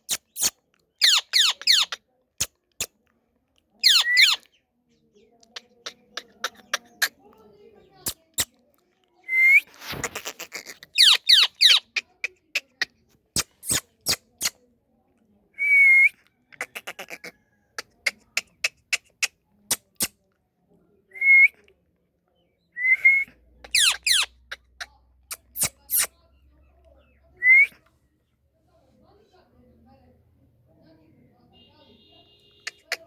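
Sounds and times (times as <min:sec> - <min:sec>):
parakeet downward chirps: 0:00.4 - 0:02.0, 0:03.8 - 0:04.4, 0:11.0 - 0:11.9, 0:23.6 - 0:24.3
parakeet whistling: 0:03.8 - 0:04.4, 0:23.0 - 0:24.3.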